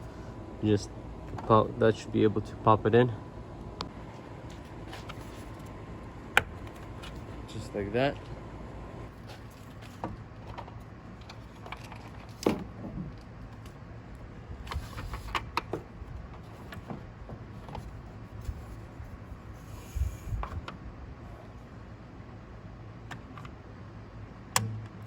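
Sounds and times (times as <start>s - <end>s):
low steady hum: 0.0s - 25.0s
clicks and knocks of roof rack parts: 9.2s - 13.8s, 24.5s - 25.0s.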